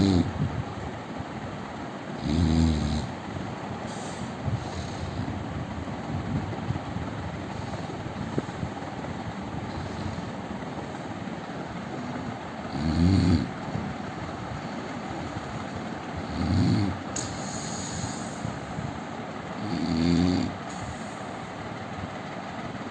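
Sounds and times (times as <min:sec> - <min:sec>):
man snoring: 0:00.0 - 0:00.4, 0:02.2 - 0:03.2, 0:12.7 - 0:13.6, 0:16.2 - 0:18.4, 0:19.6 - 0:21.0
steady background hiss: 0:00.0 - 0:22.9.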